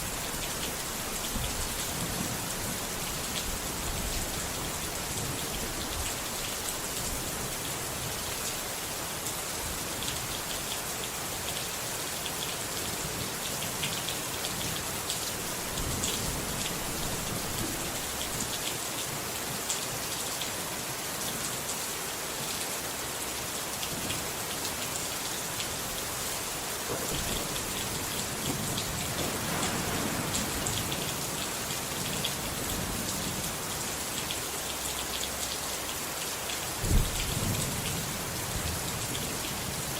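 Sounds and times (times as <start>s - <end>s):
rain falling: 0.0s - 39.9s
distant thunder rumble: 27.1s - 33.1s.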